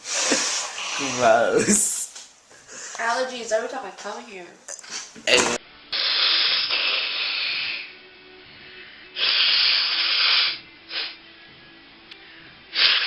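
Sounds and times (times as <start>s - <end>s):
person blowing nose: 0.0s - 1.3s, 4.8s - 7.9s, 9.2s - 11.2s, 12.7s - 13.0s.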